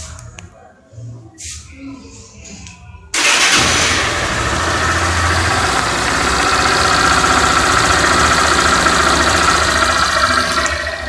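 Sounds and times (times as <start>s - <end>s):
motorcycle engine idling: 3.2s - 11.0s.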